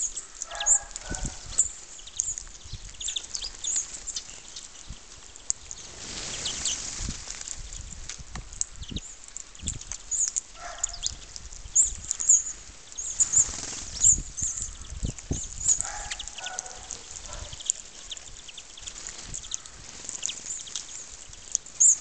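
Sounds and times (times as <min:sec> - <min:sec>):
lower bird calls: 0:00.0 - 0:06.9, 0:08.6 - 0:22.0
small birds chirping: 0:00.0 - 0:22.0.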